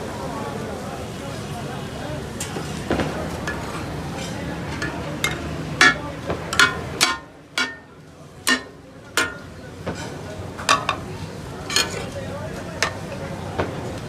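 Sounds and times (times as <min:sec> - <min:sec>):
metal spatulas clanging on iron griddle: 0:02.4 - 0:13.2.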